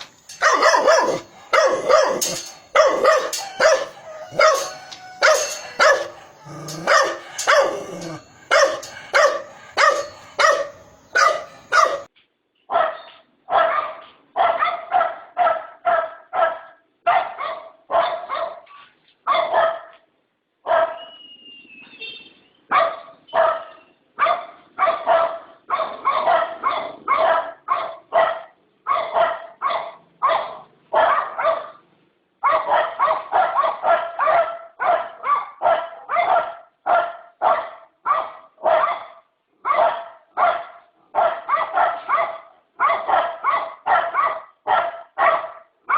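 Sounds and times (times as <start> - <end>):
dog barking: 0.0 - 12.1, 12.7 - 20.0, 20.6 - 21.0, 22.7 - 31.8, 32.4 - 45.9.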